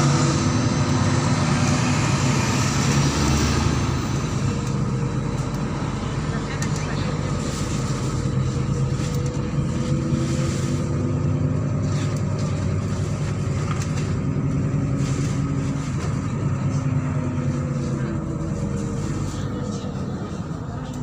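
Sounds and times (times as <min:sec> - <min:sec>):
bus engine droning: 0:00.0 - 0:21.0
tyre and road noise: 0:00.0 - 0:21.0.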